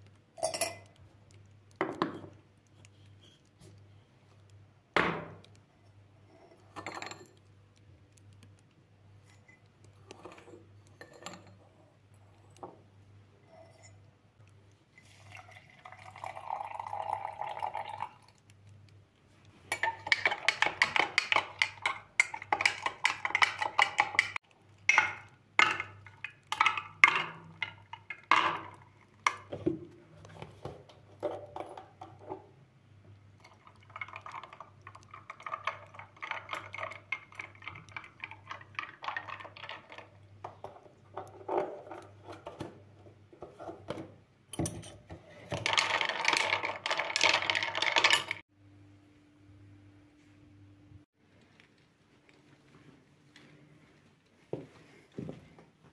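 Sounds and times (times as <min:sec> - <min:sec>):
utensil clinking and scraping dish: 0:06.4 - 0:07.4, 0:09.2 - 0:11.7, 0:19.7 - 0:29.6
liquid pouring: 0:15.0 - 0:18.5, 0:33.4 - 0:40.2.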